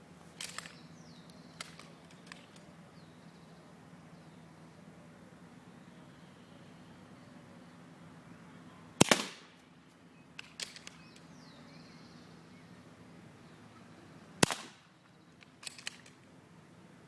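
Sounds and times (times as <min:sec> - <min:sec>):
air rifle firing: 0:09.0 - 0:09.6, 0:14.4 - 0:14.9.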